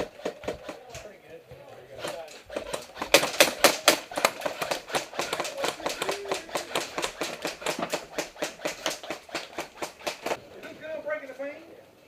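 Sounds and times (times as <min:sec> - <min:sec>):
airsoft guns firing: 0:00.0 - 0:01.1, 0:01.9 - 0:10.4.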